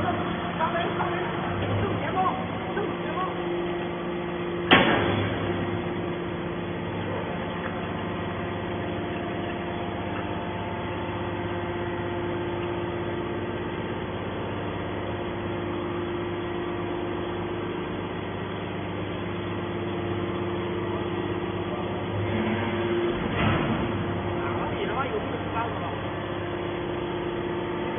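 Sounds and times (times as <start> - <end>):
electric motor and pump humming: 0.0 - 27.9.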